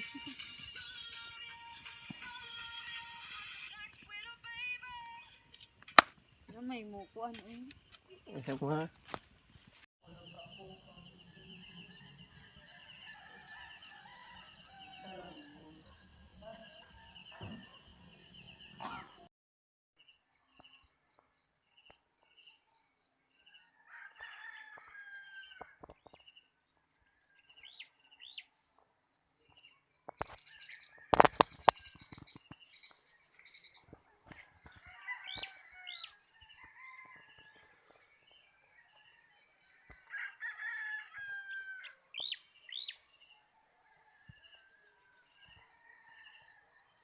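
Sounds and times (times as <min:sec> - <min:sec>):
insects chirping: 0:00.0 - 0:19.2, 0:42.1 - 0:43.0
roosters crowing: 0:11.8 - 0:15.6, 0:23.7 - 0:25.8, 0:34.3 - 0:37.8, 0:39.9 - 0:42.3.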